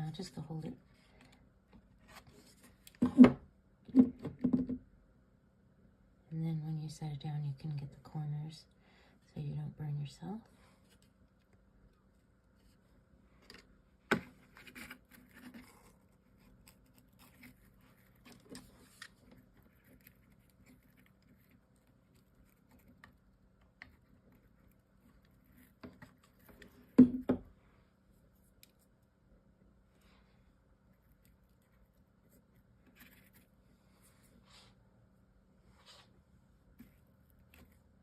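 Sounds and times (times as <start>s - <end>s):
knocks on tabletop: 27.0s - 27.4s.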